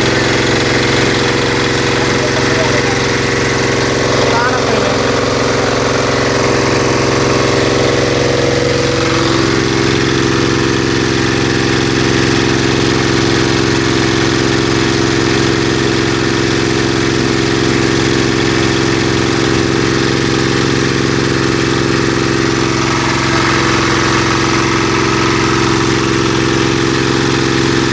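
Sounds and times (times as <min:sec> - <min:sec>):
machine drone: 0:00.0 - 0:27.9.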